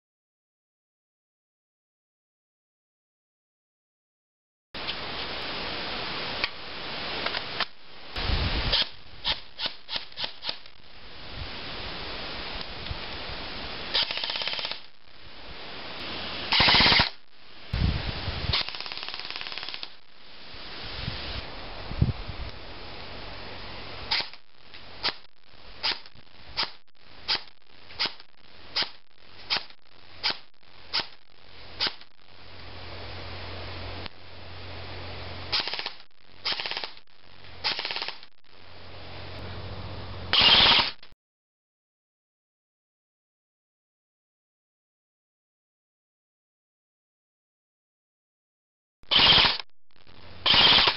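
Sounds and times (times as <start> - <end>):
airsoft gun firing bursts: 13.9 - 14.9, 16.5 - 17.2, 18.5 - 20.0, 35.5 - 37.0, 37.6 - 38.2, 40.4 - 41.0, 49.1 - 49.6, 50.4 - 50.9
steady low hum: 20.0 - 40.4.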